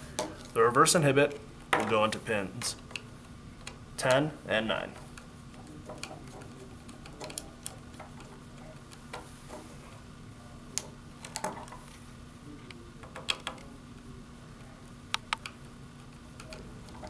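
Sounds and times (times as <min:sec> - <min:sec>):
faint steady hum: 0:00.0 - 0:17.0
wire leads clicking into terminal: 0:05.0 - 0:09.3, 0:12.7 - 0:13.7.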